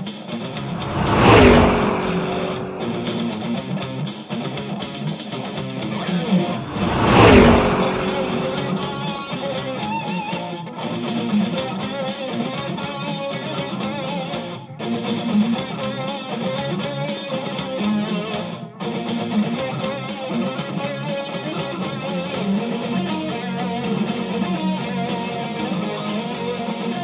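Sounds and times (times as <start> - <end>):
loud crash-like burst: 0.6 - 3.6, 6.4 - 9.6.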